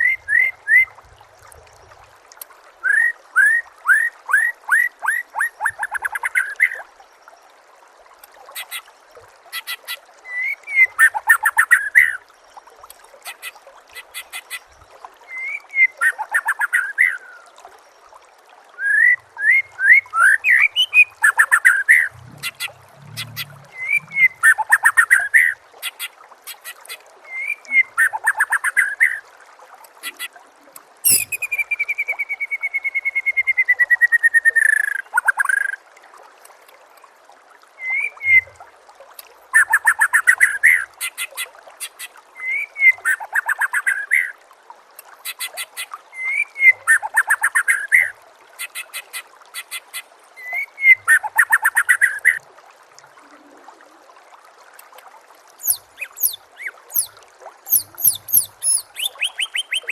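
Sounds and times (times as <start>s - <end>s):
bird singing: 22.0s - 25.2s, 31.1s - 31.8s, 55.6s - 59.9s.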